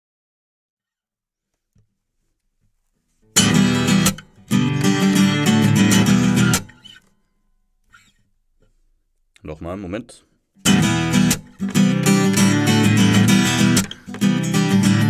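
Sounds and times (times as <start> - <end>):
acoustic guitar strumming: 3.3 - 7.1, 10.6 - 15.0.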